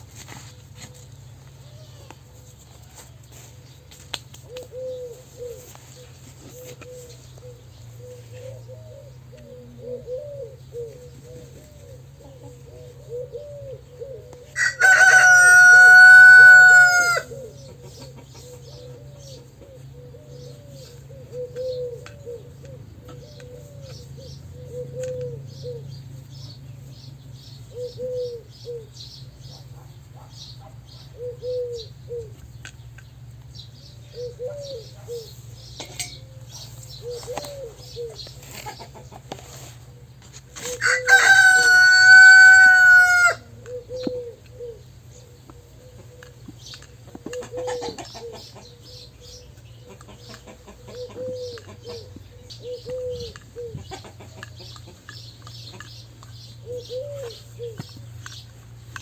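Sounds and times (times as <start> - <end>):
small birds chirping: 0.0 - 59.0
hens clucking: 0.5 - 25.4, 34.3 - 59.0
rooster crowing: 14.6 - 17.4, 40.7 - 43.5.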